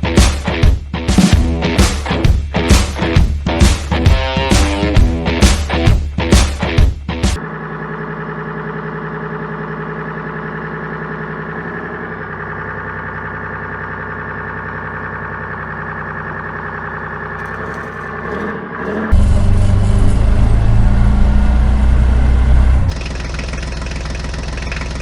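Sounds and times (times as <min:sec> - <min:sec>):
low engine-like rumble: 0:07.4 - 0:25.0.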